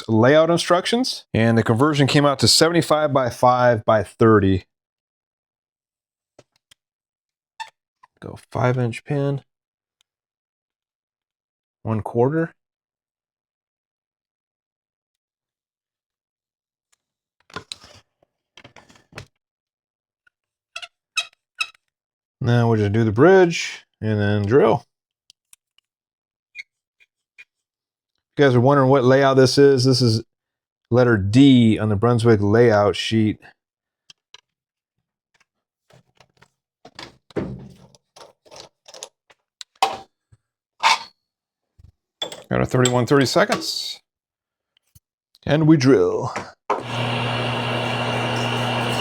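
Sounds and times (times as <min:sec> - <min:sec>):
clunks and knocks of tools: 0:35.9 - 0:40.1, 0:42.2 - 0:43.7
heavy thunk: 0:37.4 - 0:37.8.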